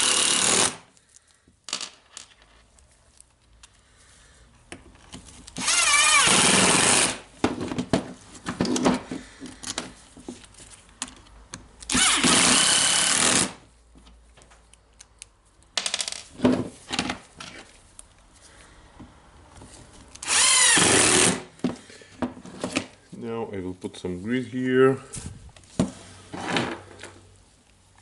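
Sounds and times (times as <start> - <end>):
electric screwdriver running: 0.0 - 0.8, 5.6 - 7.2, 11.9 - 13.6, 20.2 - 21.4
clicks and knocks of parts handled: 0.9 - 3.8, 7.4 - 11.9, 13.9 - 20.2.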